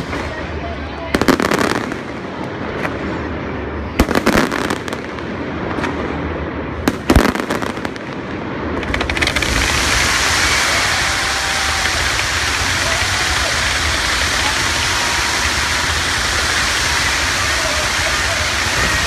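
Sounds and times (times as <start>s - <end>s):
fireworks bangs: 0.0s - 19.0s
small firework pops: 1.2s - 3.2s, 6.8s - 19.0s
steady hiss: 8.9s - 19.0s.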